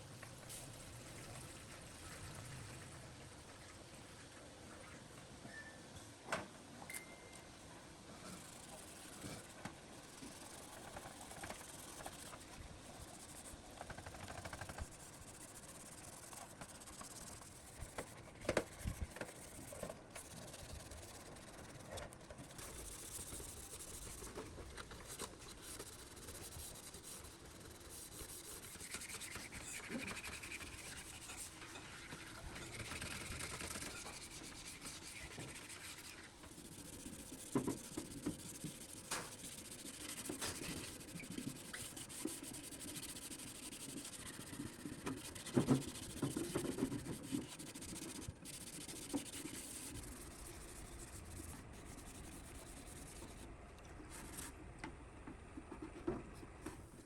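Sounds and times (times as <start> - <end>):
scraping and rubbing: 13.1 - 53.4.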